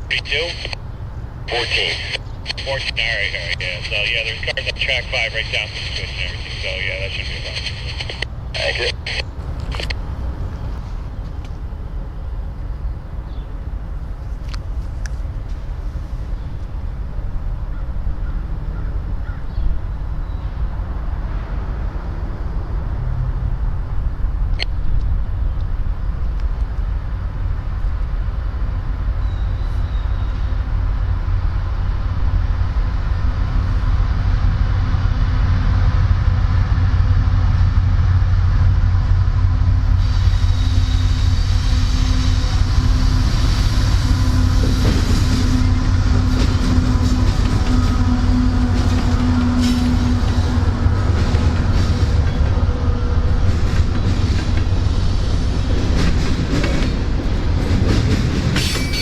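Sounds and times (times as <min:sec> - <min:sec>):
freight train rumbling past: 0:00.0 - 0:59.0
wheels hissing on rails: 0:39.6 - 0:58.6.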